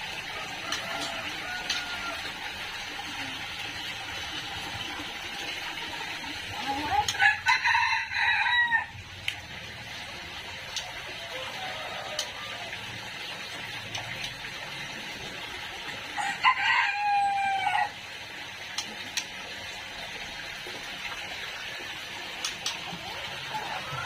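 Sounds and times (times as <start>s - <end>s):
rooster crowing: 0.4s - 2.4s, 7.1s - 9.0s, 11.2s - 12.7s, 16.2s - 18.0s.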